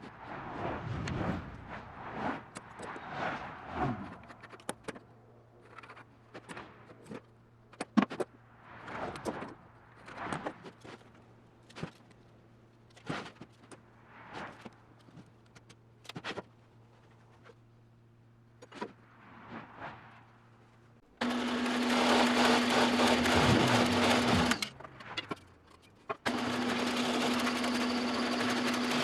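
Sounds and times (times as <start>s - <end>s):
scraping and sliding: 0.0s - 6.0s.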